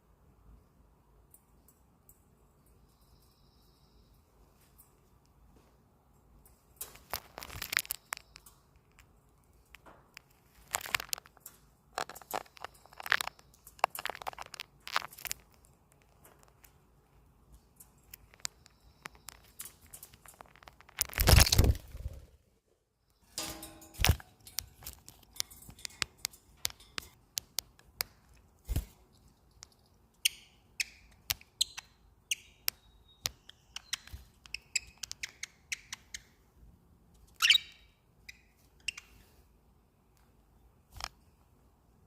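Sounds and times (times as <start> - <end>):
light clicks and scratches: 4.5 - 22.3, 23.4 - 30.0
birds rustling: 6.5 - 22.3
high bird chirps: 30.2 - 36.4, 37.3 - 39.2.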